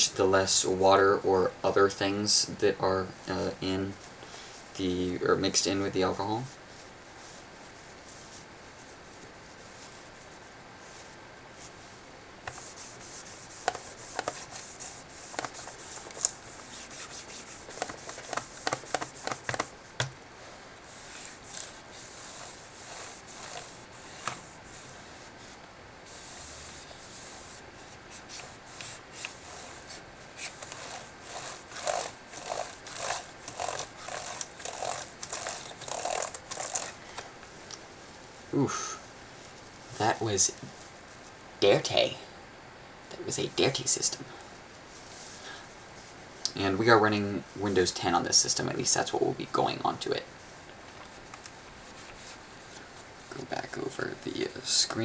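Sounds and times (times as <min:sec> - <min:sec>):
cloth rubbing plastic case: 0:12.4 - 0:20.1, 0:20.8 - 0:37.4.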